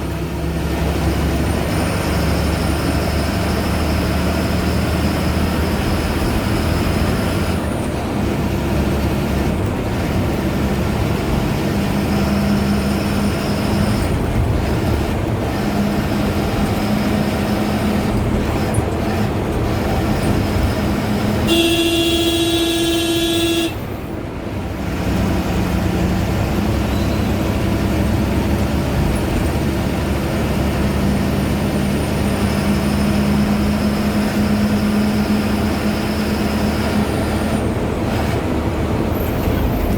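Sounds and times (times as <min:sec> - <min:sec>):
diesel bus engine running: 0:00.0 - 0:39.9
horn blast: 0:21.4 - 0:23.9
turbo whistle: 0:21.5 - 0:23.8.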